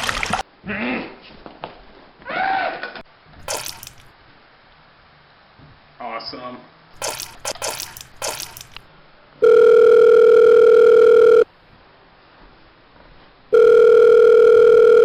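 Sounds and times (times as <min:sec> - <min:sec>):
telephone ringing: 0:09.4 - 0:11.5, 0:13.5 - 0:15.0.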